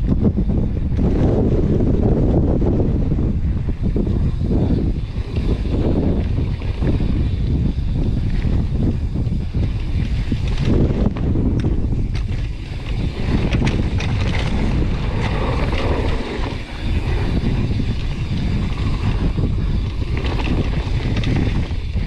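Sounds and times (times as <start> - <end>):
wind buffeting microphone: 0.0 - 22.0.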